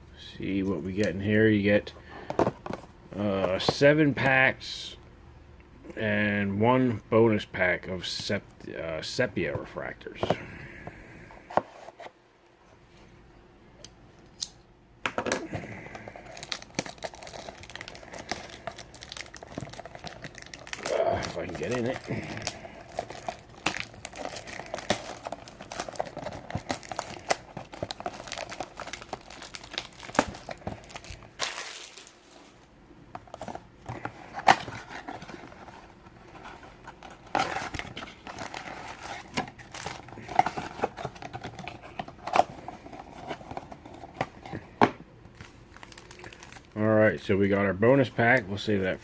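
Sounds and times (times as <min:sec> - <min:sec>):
packaging crinkling and tearing: 0:15.9 - 0:32.7, 0:33.3 - 0:44.4, 0:45.4 - 0:46.8
packaging snapping: 0:16.2 - 0:32.4.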